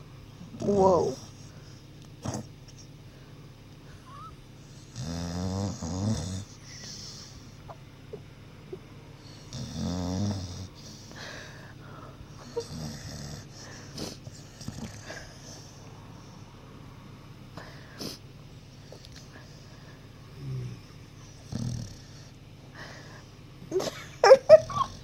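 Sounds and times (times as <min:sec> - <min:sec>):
dog snoring: 0:00.4 - 0:02.9, 0:03.9 - 0:07.7, 0:08.7 - 0:11.4, 0:12.3 - 0:16.4, 0:20.3 - 0:23.2
dog breathing softly: 0:06.4 - 0:07.7.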